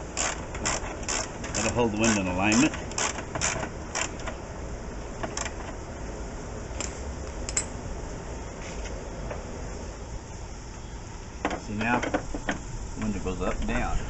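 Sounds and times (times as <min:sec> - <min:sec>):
low steady background noise: 0:00.0 - 0:14.0
light clicks and knocks: 0:11.4 - 0:13.9.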